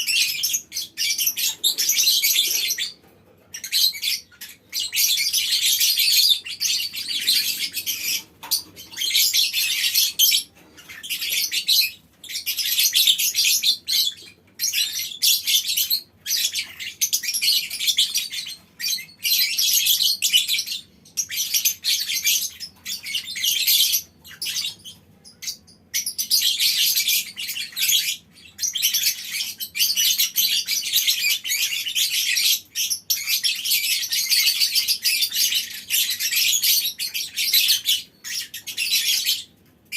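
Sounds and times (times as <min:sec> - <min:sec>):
lovebirds chattering shrilly: 0:00.0 - 0:39.6.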